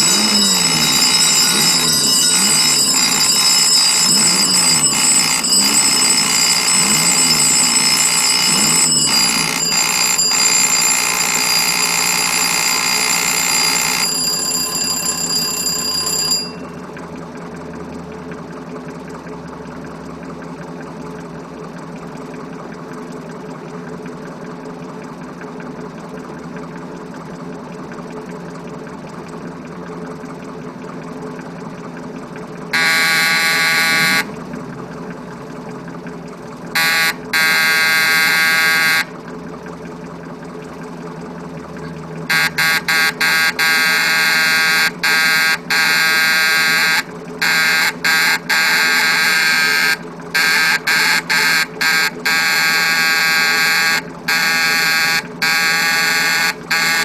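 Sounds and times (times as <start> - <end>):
electric alarm buzzer: 0.0 - 16.8, 32.7 - 34.4, 36.7 - 39.2, 42.3 - 57.0
low machinery hum: 0.0 - 57.0.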